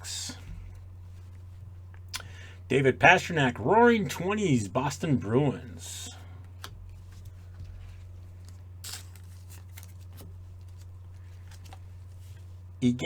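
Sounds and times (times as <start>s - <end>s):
steady low hum: 0.0s - 13.0s
trading cards rustling and clicking: 6.4s - 12.7s.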